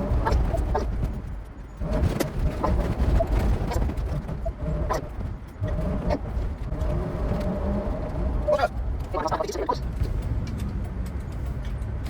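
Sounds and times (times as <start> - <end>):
engine and road rumble: 0.0 - 12.0.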